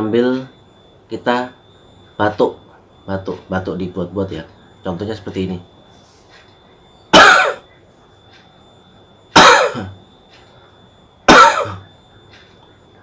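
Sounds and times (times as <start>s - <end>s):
man coughing: 7.2s - 7.6s, 9.4s - 10.0s, 11.3s - 11.8s.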